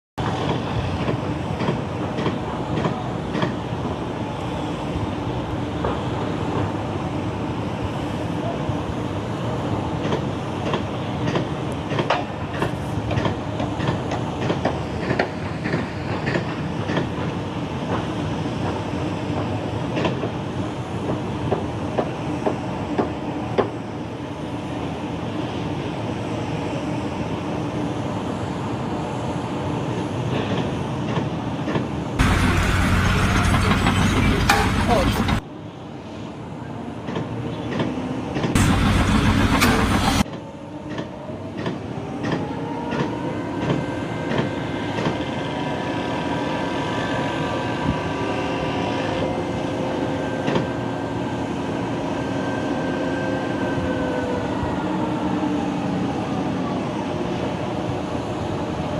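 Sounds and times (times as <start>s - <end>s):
sharp clanks and knocks: 32.2s - 35.4s
steady mechanical rumble: 32.2s - 35.4s, 38.5s - 40.3s.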